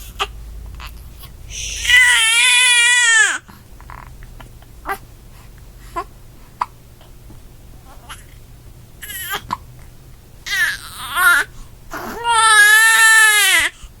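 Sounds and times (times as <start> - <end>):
baby crying: 0.1 - 3.5, 9.0 - 9.4, 10.5 - 13.8.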